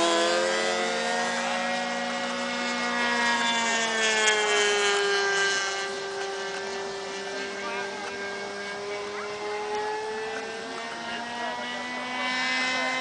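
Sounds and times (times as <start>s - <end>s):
model airplane engines buzzing: 0.0s - 13.0s.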